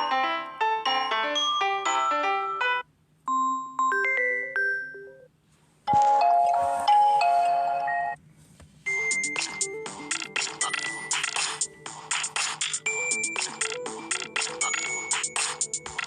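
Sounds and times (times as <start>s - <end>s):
electronic ringtone melody: 0.0s - 5.3s, 5.9s - 8.2s, 8.9s - 16.0s
tablet ringtones: 5.9s - 8.2s, 8.9s - 16.0s.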